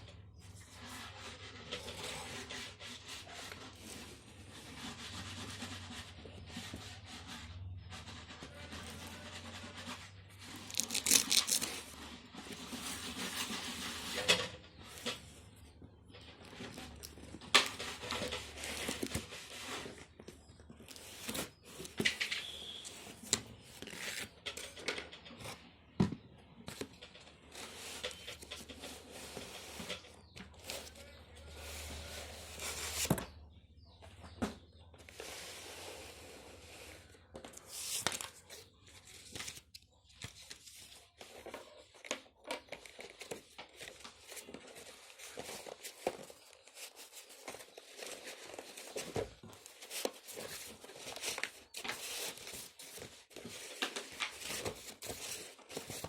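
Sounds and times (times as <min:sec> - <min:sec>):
packaging being torn and crinkled: 0:10.6 - 0:11.8.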